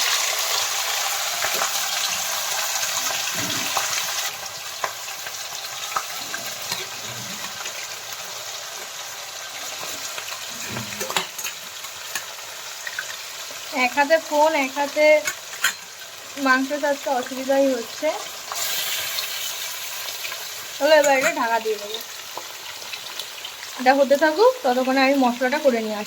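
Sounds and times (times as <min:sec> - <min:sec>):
meat stirred in a pan: 0:00.0 - 0:23.8
chicken sizzling in hot oil: 0:00.0 - 0:26.0.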